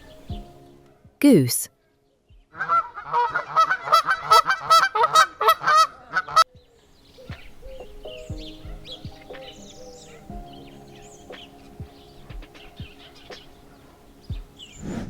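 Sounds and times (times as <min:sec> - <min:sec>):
goose honking: 0:02.6 - 0:06.4.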